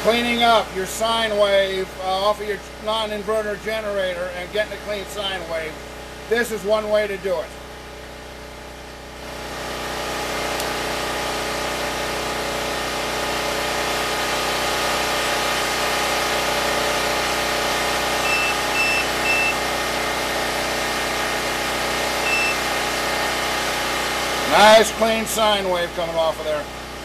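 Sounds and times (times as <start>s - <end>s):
generator engine running: 0.0s - 27.0s
short high beeps: 18.2s - 19.6s, 22.2s - 22.6s.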